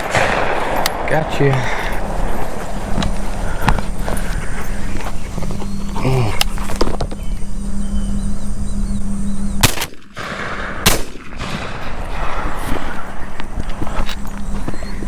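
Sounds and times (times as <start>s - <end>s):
shotgun shots: 0.0s - 3.8s, 9.6s - 13.0s.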